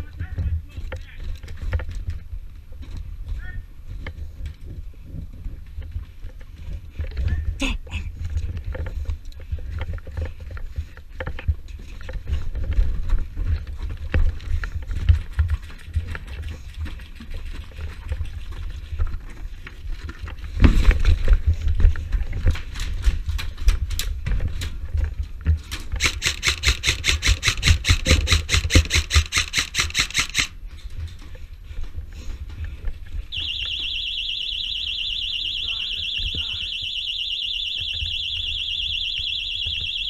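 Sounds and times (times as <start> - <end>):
airsoft gun full auto fire: 26.0 - 30.6.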